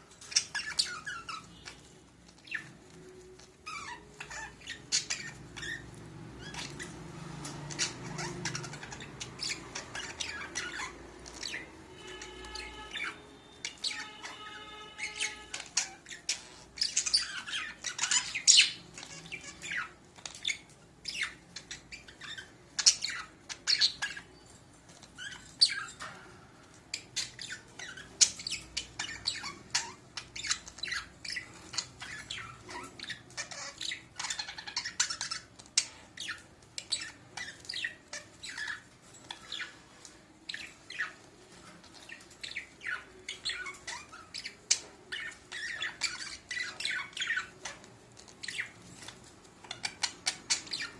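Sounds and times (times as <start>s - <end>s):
budgerigars chirping and squawking: 0.0s - 50.9s.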